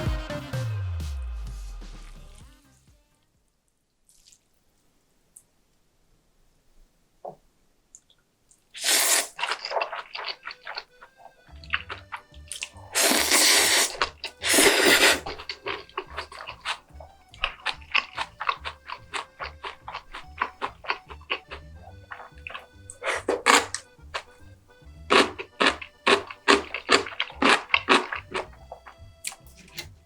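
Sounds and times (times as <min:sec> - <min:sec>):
background music with beat: 0:00.0 - 0:03.2.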